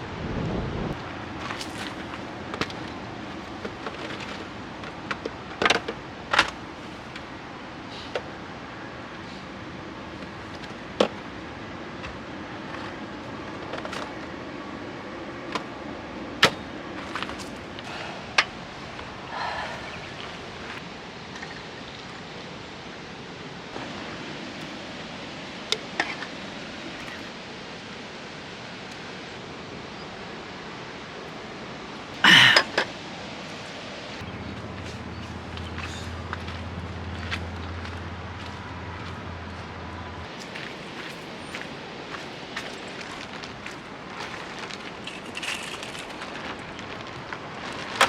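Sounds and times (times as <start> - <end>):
steady background hiss: 0.0 - 48.0
camping gear clicks and knocks: 1.0 - 7.3, 12.0 - 14.5, 16.4 - 19.1, 40.2 - 48.0.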